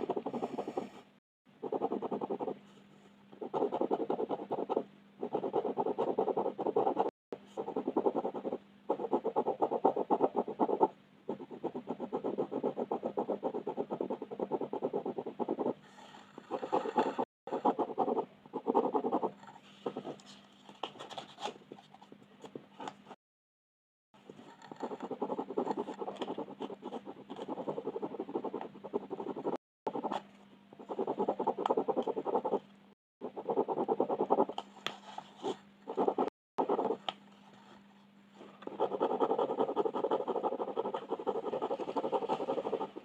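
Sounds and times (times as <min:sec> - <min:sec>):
faint steady hum: 0:00.0 - 0:23.2, 0:24.2 - 0:43.0
scratchy coloring strokes on paper: 0:38.4 - 0:43.0.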